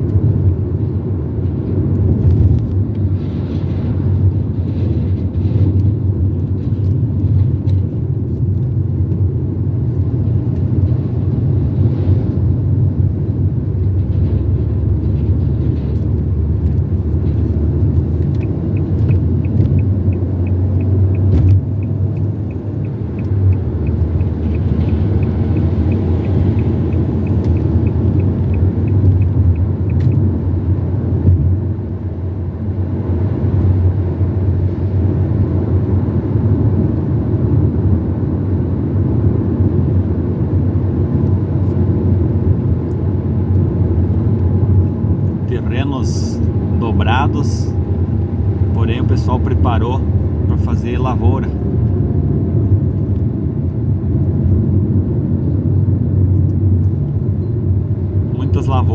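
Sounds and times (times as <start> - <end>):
car road and engine rumble: 0.0 - 58.9
regular high ticks: 18.2 - 30.2.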